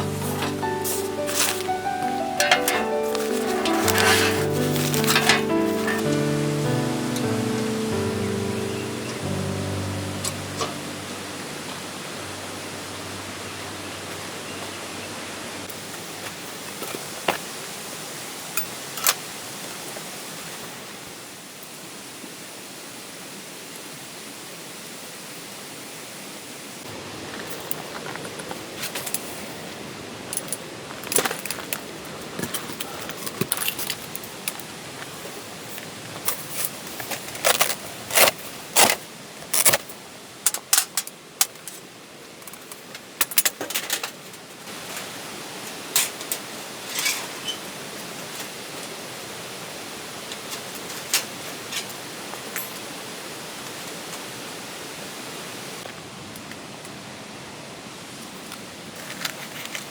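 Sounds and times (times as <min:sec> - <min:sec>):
steady hiss: 0:00.0 - 0:15.7.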